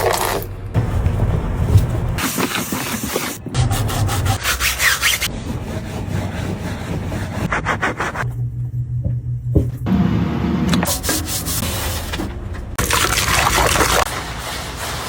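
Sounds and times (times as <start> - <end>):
scrubbing strokes on a surface: 0.8 - 8.2, 13.2 - 15.0
low hum: 5.3 - 12.8.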